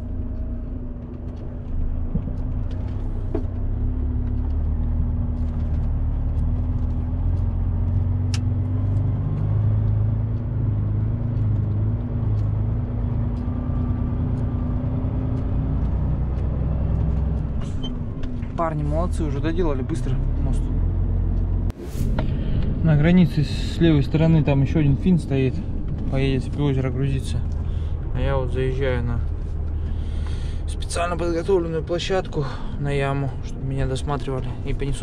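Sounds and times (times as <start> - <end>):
small clicks and rattles: 0.0 - 20.2
truck engine droning: 0.0 - 35.0.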